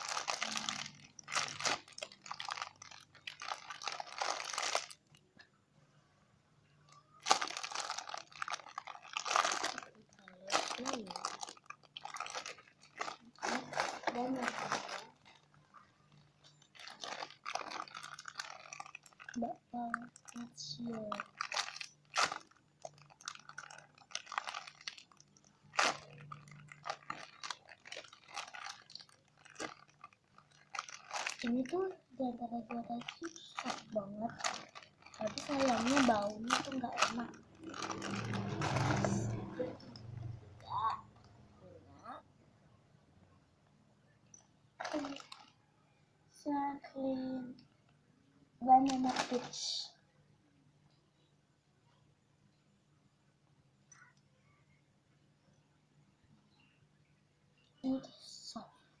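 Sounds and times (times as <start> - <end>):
plastic packaging crinkling: 0.0 - 5.3, 6.9 - 40.0, 44.8 - 45.6, 48.7 - 49.8
hands handling squishy toys: 0.0 - 5.4, 6.9 - 40.0, 44.8 - 45.5, 48.7 - 49.6
faint steady low hum: 0.0 - 59.0
rustling and crackling: 6.9 - 40.1.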